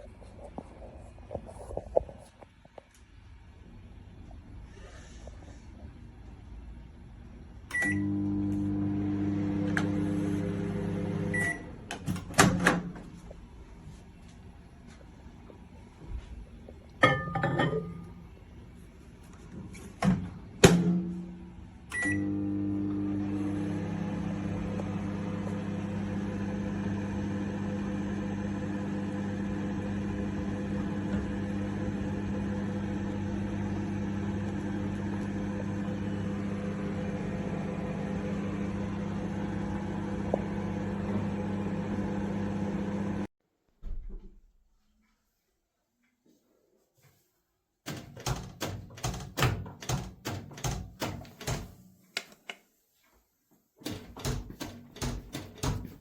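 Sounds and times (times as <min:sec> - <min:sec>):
microwave beep: 0:07.7 - 0:09.3, 0:11.2 - 0:11.8, 0:21.9 - 0:23.7
microwave oven humming: 0:07.7 - 0:11.9, 0:21.9 - 0:43.3.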